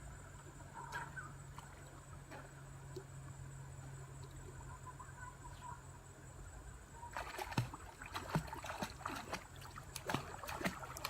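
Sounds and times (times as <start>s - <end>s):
low steady hum: 0.0s - 11.0s
water splashing: 7.0s - 11.0s.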